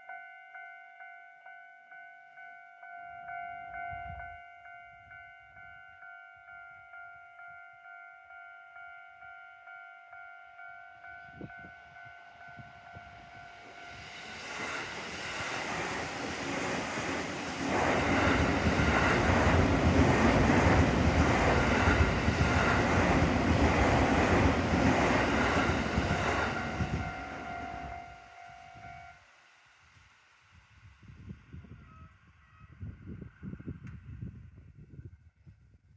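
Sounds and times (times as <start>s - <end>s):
level crossing alarm bell: 0.0s - 14.2s, 26.5s - 29.1s
train wheels clattering on rails: 13.6s - 27.4s.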